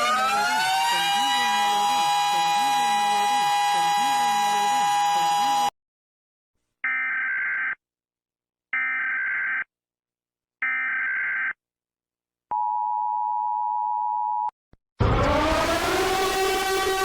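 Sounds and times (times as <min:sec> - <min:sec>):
steady lower alarm tone: 0:12.5 - 0:17.0
loud blaring horn: 0:15.0 - 0:17.0.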